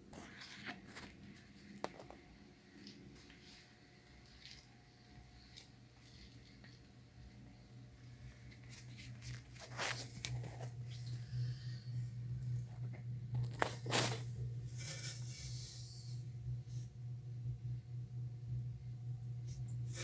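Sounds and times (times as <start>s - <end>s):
steady low hum: 0.0s - 20.0s
parts scraping and rustling: 8.5s - 11.6s, 12.5s - 16.1s.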